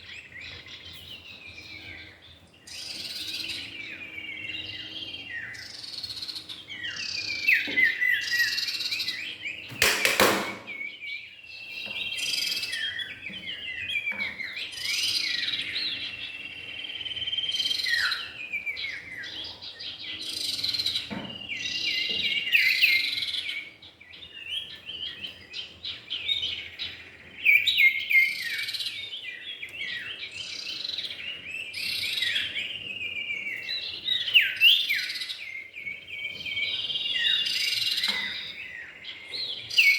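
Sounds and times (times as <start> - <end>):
birds chattering trills and whistles: 0.0 - 39.9
brief knock: 9.7 - 10.8.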